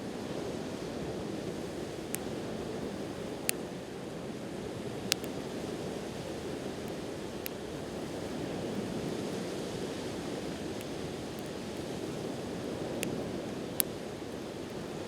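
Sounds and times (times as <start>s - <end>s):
campfire crackling pops: 5.0s - 15.0s.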